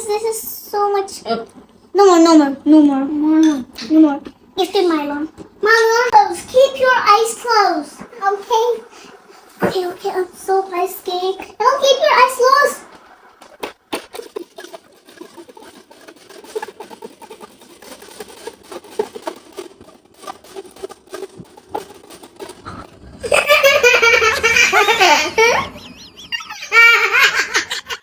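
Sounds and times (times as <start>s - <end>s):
children laughing and shrieking: 23.2s - 28.0s.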